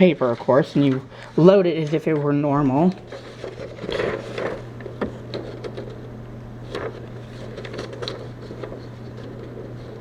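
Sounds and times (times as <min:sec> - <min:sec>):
paper rustling: 0:00.0 - 0:10.0
steady low hum: 0:00.0 - 0:10.0.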